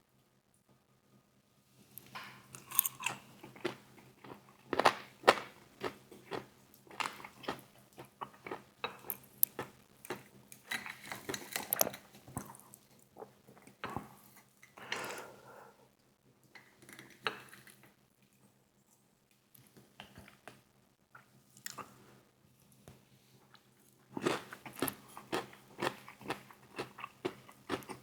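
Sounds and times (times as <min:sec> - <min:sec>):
crunching and chewing fried chicken: 0:02.0 - 0:14.5, 0:23.4 - 0:28.0.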